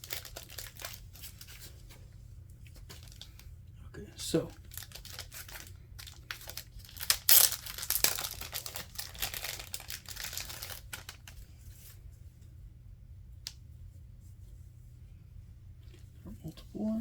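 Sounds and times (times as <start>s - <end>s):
packaging torn and crinkled: 0.0s - 1.8s, 2.8s - 3.4s, 4.6s - 11.4s.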